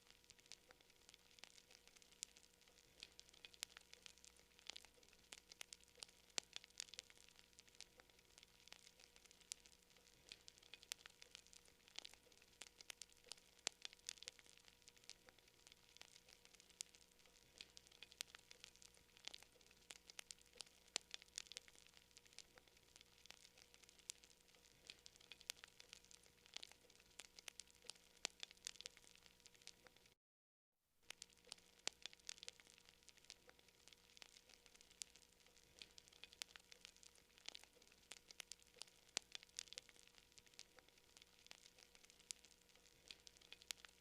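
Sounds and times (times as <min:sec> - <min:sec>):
campfire crackling: 0:00.0 - 0:30.2, 0:31.0 - 0:44.0
low hiss: 0:00.0 - 0:30.2.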